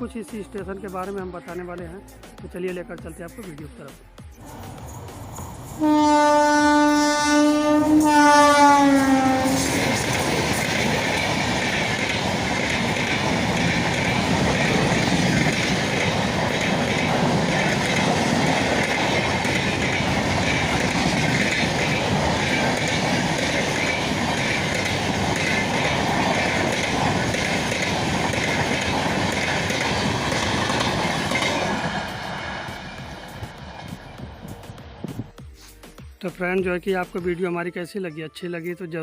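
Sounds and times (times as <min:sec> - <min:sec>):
train horn: 0:05.7 - 0:09.8
train wheels clattering on track: 0:08.0 - 0:35.2.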